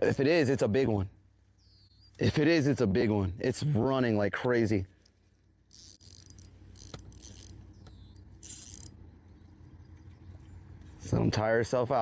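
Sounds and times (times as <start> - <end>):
fishing reel drag zinging: 5.7 - 9.0.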